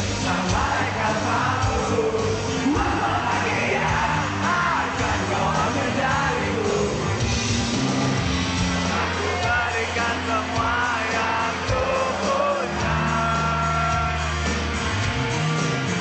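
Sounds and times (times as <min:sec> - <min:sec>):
lead vocal singing and yelling: 0:00.0 - 0:16.0
rock band playing live: 0:00.0 - 0:16.0.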